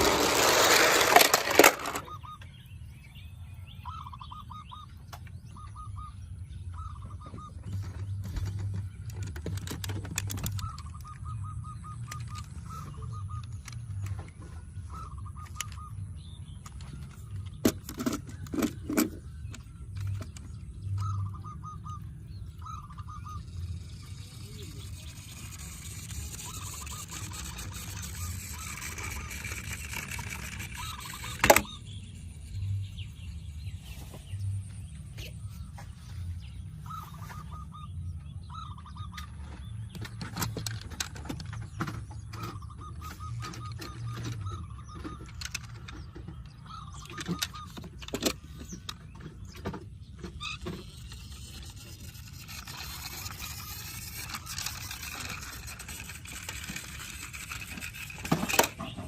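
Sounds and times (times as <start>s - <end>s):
toy vehicles clicking and knocking: 0.0s - 2.4s, 7.6s - 21.4s, 22.6s - 33.6s, 39.2s - 59.0s.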